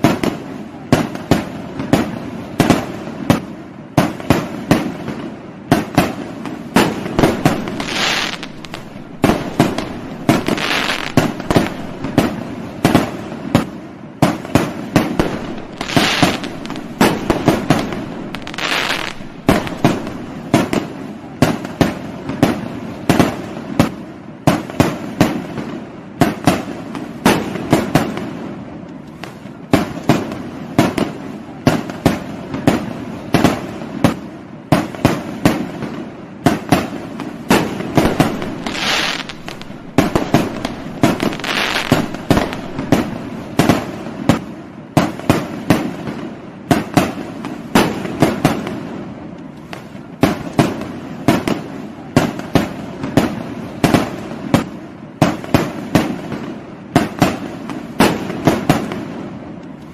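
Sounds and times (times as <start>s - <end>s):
fireworks hissing crackle: 0.0s - 22.4s, 36.5s - 54.6s
fireworks bangs: 0.0s - 59.9s.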